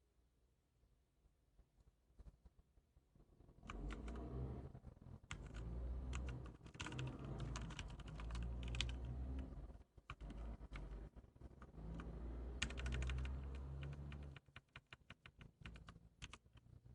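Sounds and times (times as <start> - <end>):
keyboard typing: 3.6 - 4.3, 5.2 - 16.9.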